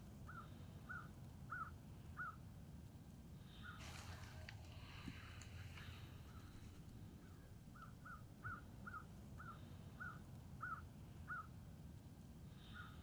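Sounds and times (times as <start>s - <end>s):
short bird-like calls: 7.2s - 11.5s, 12.5s - 13.0s.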